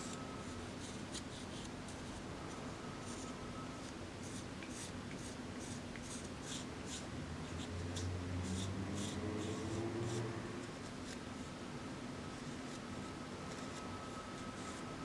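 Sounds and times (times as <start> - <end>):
low motor-like hum: 7.2 - 11.0.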